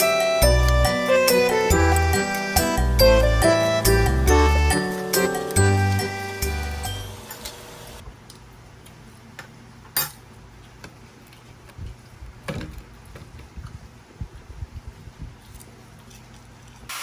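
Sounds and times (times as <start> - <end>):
background music: 0.0 - 7.3
cutlery and dishes clinking: 10.0 - 10.2.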